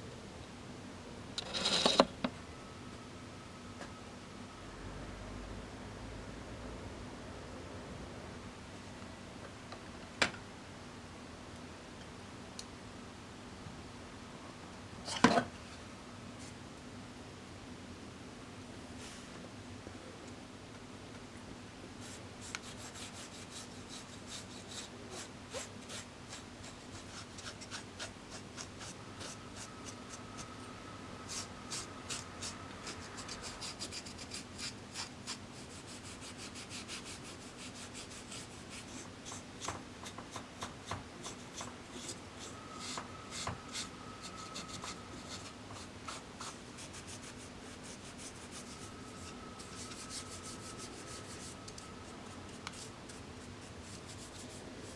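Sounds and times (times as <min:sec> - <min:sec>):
faint steady hum: 0:00.0 - 0:54.9
wood scraping strokes: 0:41.2 - 0:54.9.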